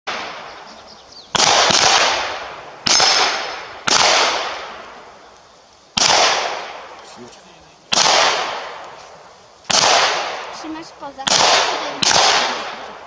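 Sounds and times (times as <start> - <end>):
gunshots with echo: 0.1 - 0.5, 1.3 - 5.0, 6.0 - 7.0, 7.9 - 8.8, 9.7 - 13.0.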